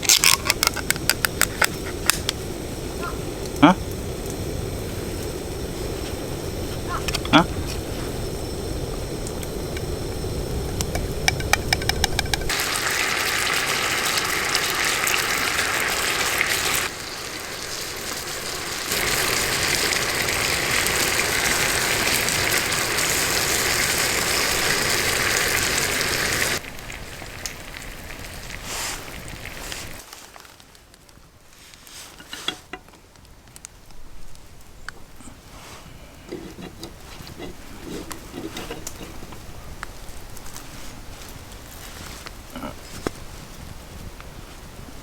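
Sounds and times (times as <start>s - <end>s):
igniter clicks: 0.0s - 12.6s
gas stove hissing: 0.0s - 30.1s, 35.0s - 42.2s.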